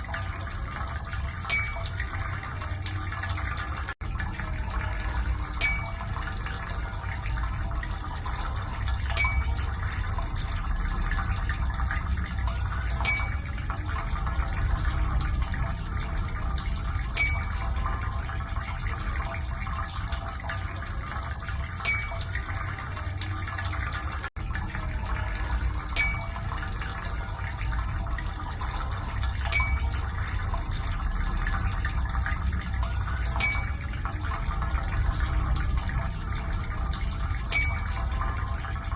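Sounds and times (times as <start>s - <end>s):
running water with low rumble: 0.0s - 38.9s
sharp drip-like tick: 1.4s - 2.6s, 16.7s - 23.3s.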